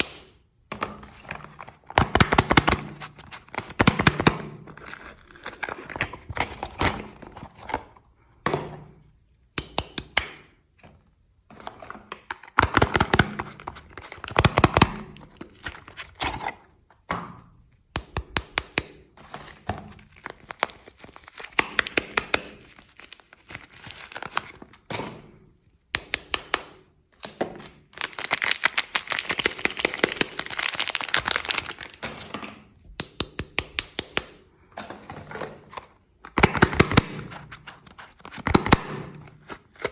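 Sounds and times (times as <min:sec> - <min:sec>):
packaging crinkling and tearing: 0:01.4 - 0:07.8, 0:19.2 - 0:24.9, 0:27.5 - 0:32.2, 0:36.4 - 0:39.9.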